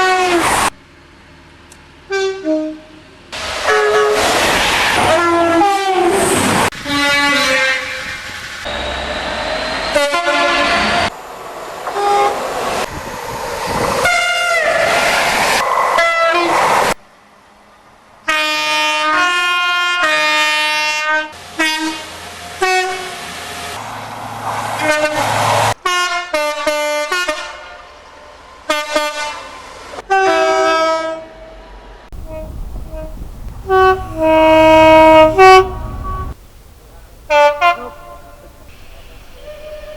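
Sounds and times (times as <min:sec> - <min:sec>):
two-tone train horns: 0:00.0 - 0:00.7, 0:02.1 - 0:11.2, 0:11.8 - 0:12.9, 0:14.0 - 0:14.9, 0:18.2 - 0:23.8, 0:24.8 - 0:39.9
trains passing: 0:03.1 - 0:18.6, 0:21.4 - 0:26.0, 0:31.4 - 0:39.9.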